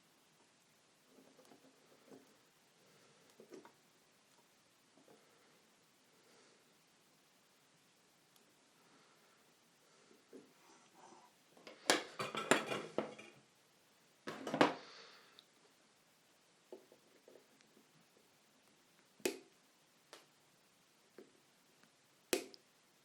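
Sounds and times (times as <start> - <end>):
metal tools clattering on workbench: 12.1 - 13.4.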